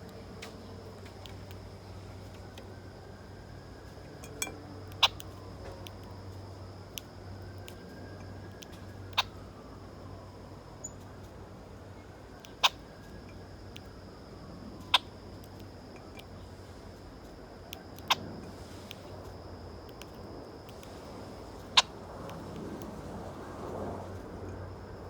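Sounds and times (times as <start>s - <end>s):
steady low hum: 0.0s - 25.0s
songbird chip calls: 4.9s - 6.0s, 8.5s - 9.4s, 12.4s - 13.9s, 14.8s - 16.5s, 17.7s - 19.2s, 19.9s - 23.5s.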